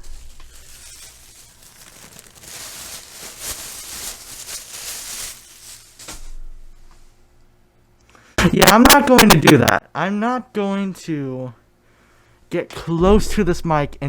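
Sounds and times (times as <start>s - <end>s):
chip bag crinkling: 0.0s - 6.5s.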